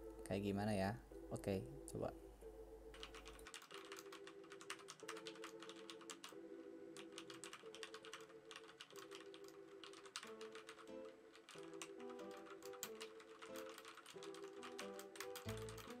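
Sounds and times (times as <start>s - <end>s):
quiet background music: 0.0s - 16.0s
rapid typing on mechanical keyboard: 2.9s - 6.3s, 7.0s - 16.0s.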